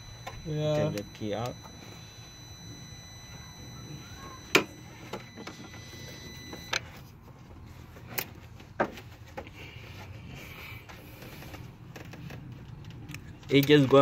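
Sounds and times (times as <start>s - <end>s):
faint high whine: 0.0s - 6.8s.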